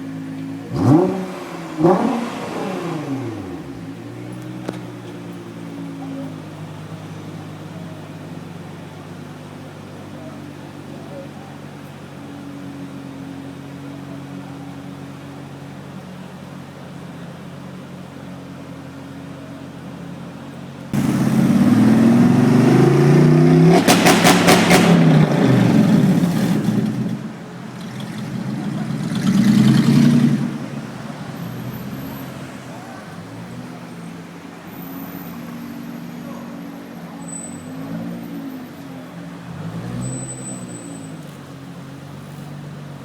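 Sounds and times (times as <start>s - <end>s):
car engine idling and revving: 0.0s - 43.0s
exhaust pops: 21.0s - 22.8s, 23.7s - 30.8s.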